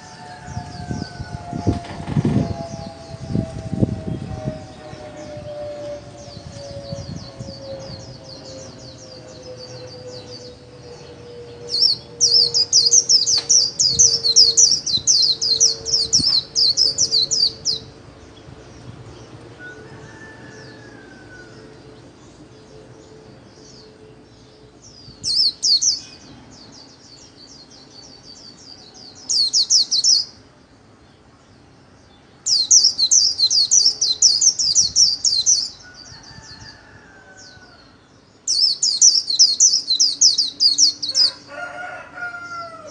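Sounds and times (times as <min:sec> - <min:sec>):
white-eye twittering song: 0:00.0 - 0:42.9.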